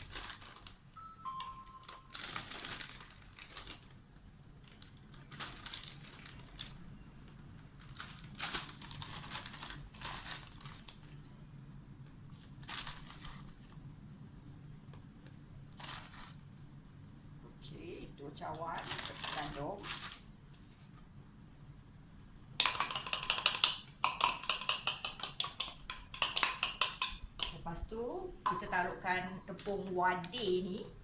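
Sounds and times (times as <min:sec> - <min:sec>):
flour rustling in a bowl: 0:00.0 - 0:00.9, 0:07.8 - 0:11.2, 0:12.3 - 0:13.8, 0:15.8 - 0:16.4, 0:18.4 - 0:21.0
faint steady hum: 0:00.0 - 0:31.0.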